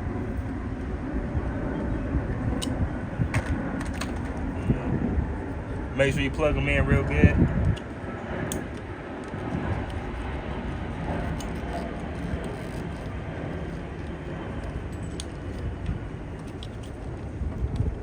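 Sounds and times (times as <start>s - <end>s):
steady background noise: 0.0s - 18.0s.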